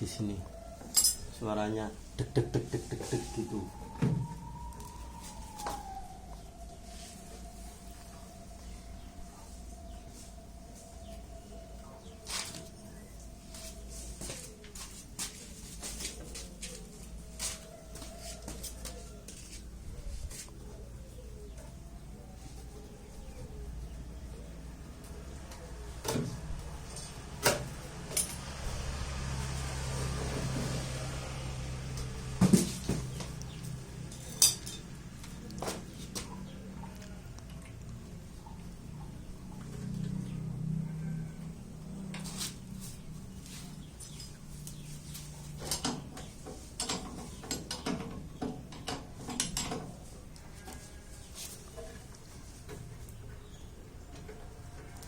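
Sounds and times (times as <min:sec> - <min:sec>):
metal tools clinking and knocking: 0:00.8 - 0:01.4, 0:28.1 - 0:28.6, 0:34.1 - 0:34.9
sharp metal clinks: 0:00.9 - 0:01.4
low hum: 0:02.0 - 0:14.0.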